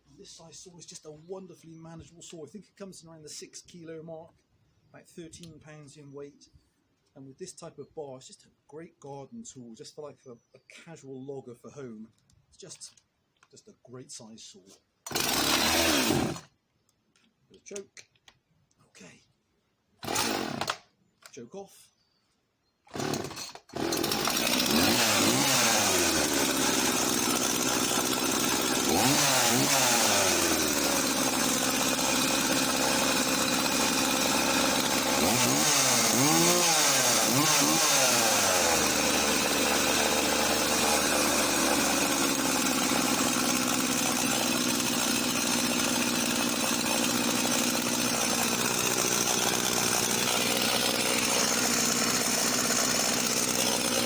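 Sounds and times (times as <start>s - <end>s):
chainsaw revving: 15.1s - 16.5s, 20.0s - 20.9s, 22.9s - 54.0s.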